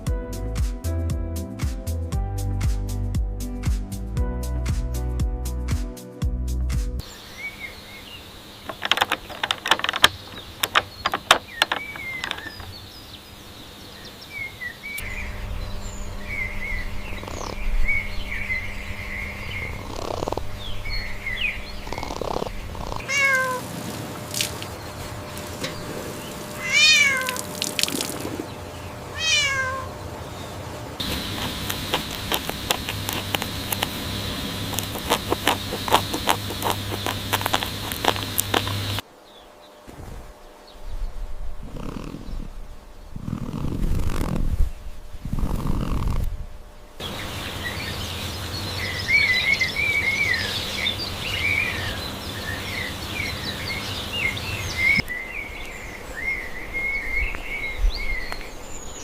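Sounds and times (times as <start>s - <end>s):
sharp clicks and knocks: 8.7s - 12.8s, 31.0s - 39.0s
cats meowing: 21.9s - 23.7s, 26.6s - 27.6s, 29.1s - 30.0s.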